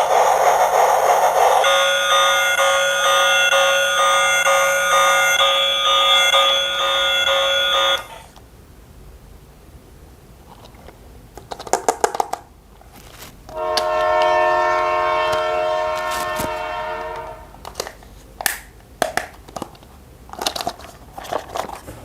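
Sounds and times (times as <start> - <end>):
toy train horn: 1.6 - 8.3, 13.5 - 17.6
plastic toy parts clicking: 10.5 - 12.5, 17.6 - 21.8.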